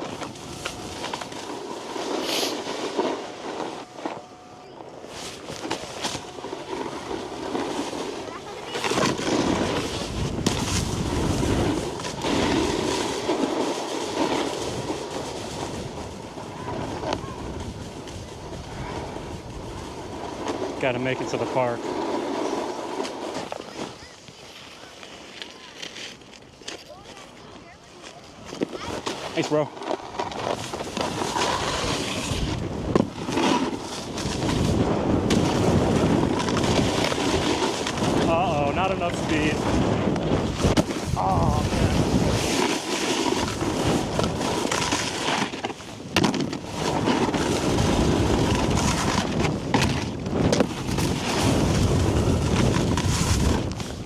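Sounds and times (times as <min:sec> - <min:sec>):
snowboard scraping over snow: 0:00.0 - 0:54.0
wind buffeting microphone: 0:06.9 - 0:12.9, 0:14.6 - 0:20.8, 0:30.6 - 0:42.6, 0:45.9 - 0:54.0.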